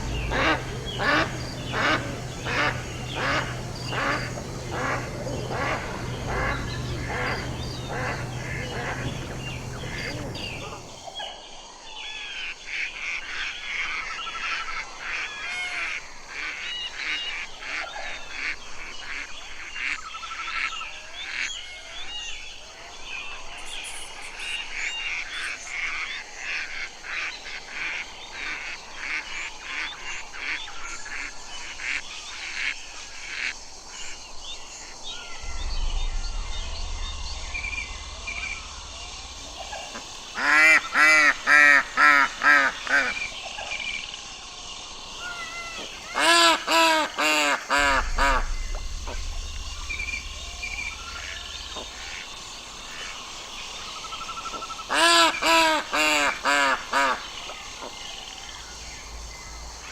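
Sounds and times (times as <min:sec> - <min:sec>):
ducks calling: 0:00.0 - 0:11.0, 0:35.4 - 0:43.3, 0:45.2 - 0:53.2, 0:54.3 - 0:58.0.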